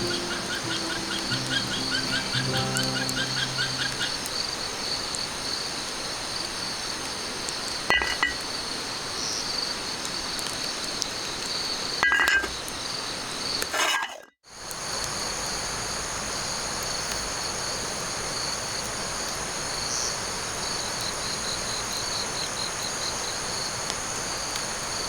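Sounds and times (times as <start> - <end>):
insects chorus: 0.0 - 7.8.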